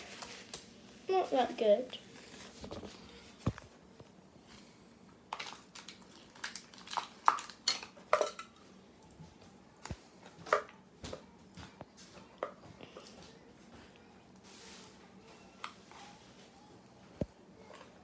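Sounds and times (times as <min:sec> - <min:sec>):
containers clicking and knocking: 0:05.3 - 0:08.6.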